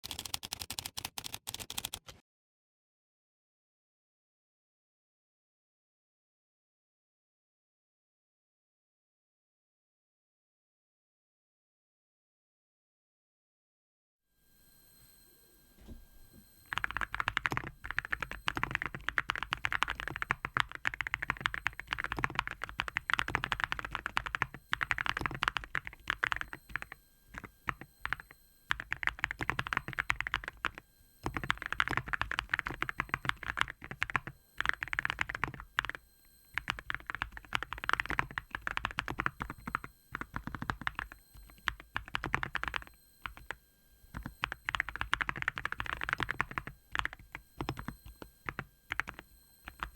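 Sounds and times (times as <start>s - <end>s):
fast keyboard typing: 0.0s - 2.2s, 16.7s - 49.9s.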